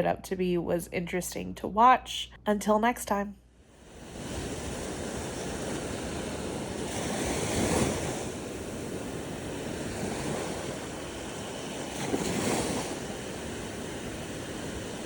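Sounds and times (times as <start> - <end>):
ocean surf washing onto beach: 3.8 - 15.0.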